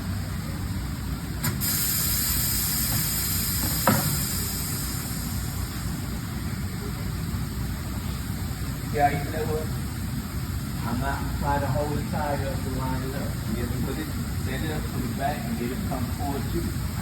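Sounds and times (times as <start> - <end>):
steady low hum: 0.0 - 17.0
compressed air hissing: 1.4 - 6.6.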